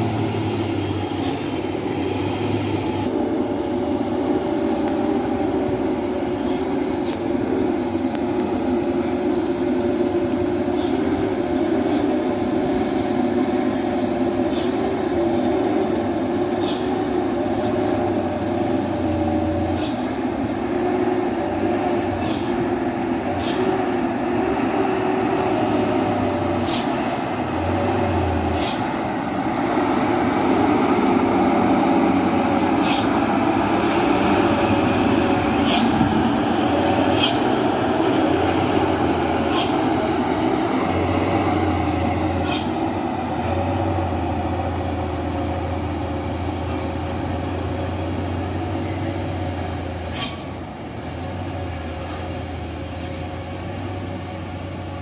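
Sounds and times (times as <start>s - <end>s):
diesel truck engine droning: 0.0s - 55.0s
short sharp clicks or hisses: 14.5s - 14.8s, 16.6s - 17.0s, 19.7s - 20.1s, 23.4s - 23.7s, 26.6s - 27.0s, 28.5s - 28.9s, 32.7s - 33.2s, 35.3s - 36.0s, 36.9s - 37.5s, 39.4s - 39.8s, 42.4s - 42.8s, 50.1s - 50.5s.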